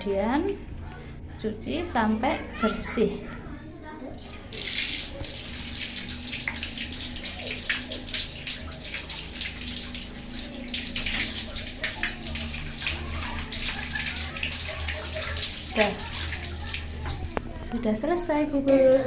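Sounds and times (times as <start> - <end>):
water splashing over hands: 4.2 - 17.8
tap water running: 4.2 - 18.9.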